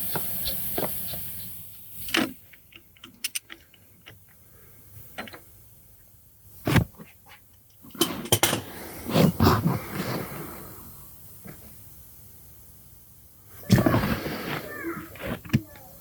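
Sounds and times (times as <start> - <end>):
metal parts clicking and tapping: 1.9 - 4.4.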